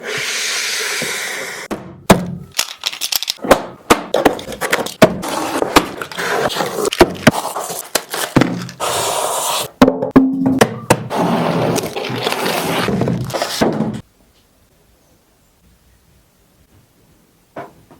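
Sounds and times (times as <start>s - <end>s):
packaging rustling: 2.5s - 3.4s, 4.3s - 8.8s.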